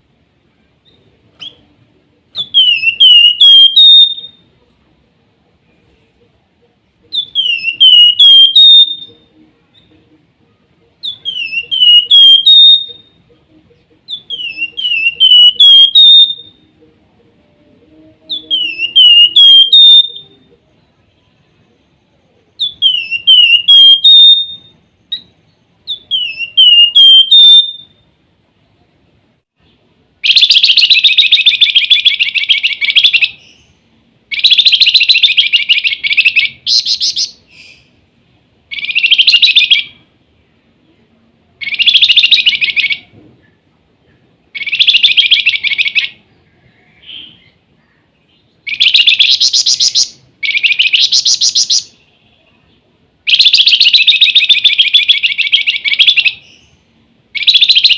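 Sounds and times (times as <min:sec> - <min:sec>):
songbird whistled phrase: 0:02.4 - 0:04.4, 0:07.2 - 0:09.9, 0:11.0 - 0:13.2, 0:14.0 - 0:20.5, 0:22.6 - 0:25.3, 0:25.9 - 0:28.0.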